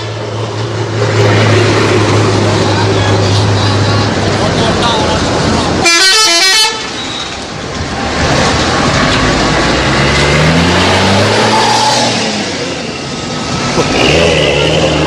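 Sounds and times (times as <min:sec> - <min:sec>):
bus engine revving: 0:00.0 - 0:05.8, 0:06.7 - 0:15.0
bus multi-tone horn tune: 0:05.8 - 0:07.4.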